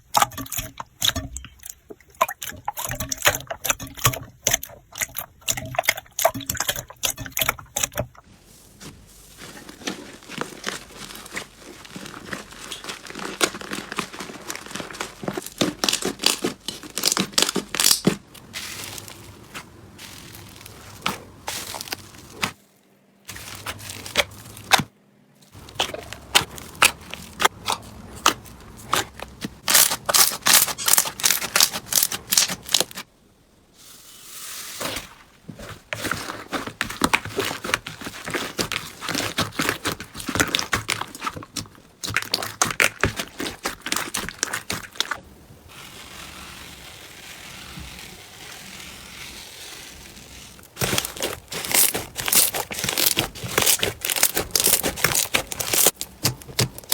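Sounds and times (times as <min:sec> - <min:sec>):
slime crackling and popping: 0:09.4 - 0:22.6, 0:23.3 - 0:24.9, 0:25.5 - 0:33.1, 0:36.0 - 0:56.9
soft steady hiss: 0:32.9 - 0:35.9.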